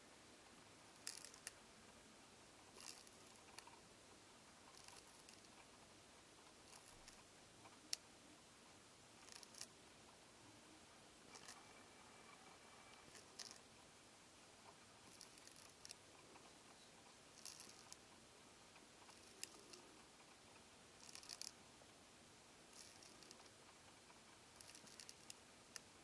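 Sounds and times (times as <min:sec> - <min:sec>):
snail rasping a leaf: 0:01.0 - 0:01.6, 0:02.6 - 0:03.8, 0:04.6 - 0:05.8, 0:06.5 - 0:08.0, 0:09.2 - 0:09.7, 0:11.3 - 0:13.7, 0:14.6 - 0:18.2, 0:18.8 - 0:21.6, 0:22.7 - 0:26.0.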